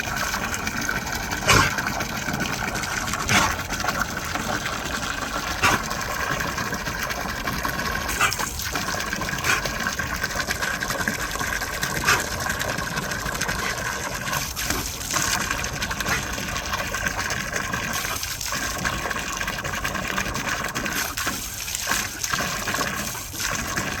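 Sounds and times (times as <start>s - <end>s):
water gushing: 0.0s - 24.0s.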